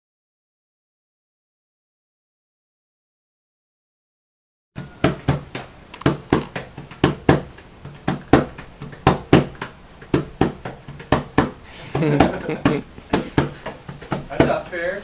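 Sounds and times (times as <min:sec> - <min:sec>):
rhythmic percussive beat: 0:04.8 - 0:15.0.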